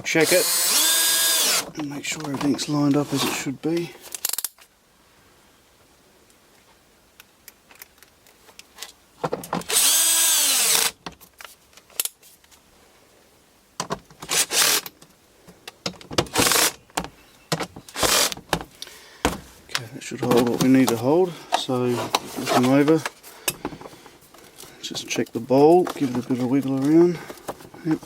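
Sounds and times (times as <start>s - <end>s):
power drill driving screws: 0.2s - 1.7s, 9.6s - 11.0s, 14.2s - 14.9s, 16.3s - 16.8s, 17.9s - 18.4s
drill clicks: 0.3s - 1.7s, 9.6s - 11.0s, 14.2s - 14.9s, 16.3s - 16.8s, 17.9s - 18.4s.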